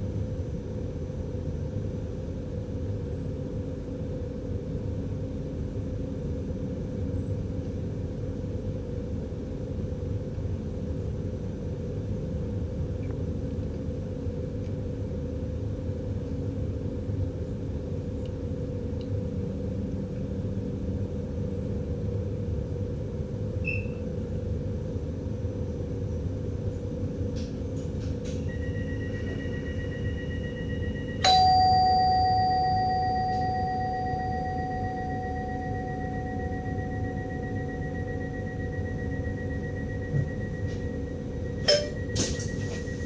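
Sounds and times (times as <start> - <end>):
train cab running rumble: 0.0 - 43.0
electronic chime: 28.5 - 43.0
faint steady high tone: 28.5 - 43.0.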